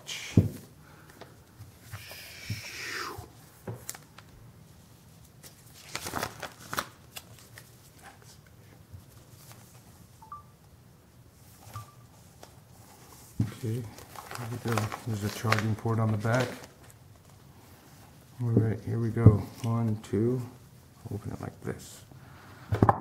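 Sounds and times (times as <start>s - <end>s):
packaging rustling: 5.2s - 8.4s, 11.6s - 17.4s.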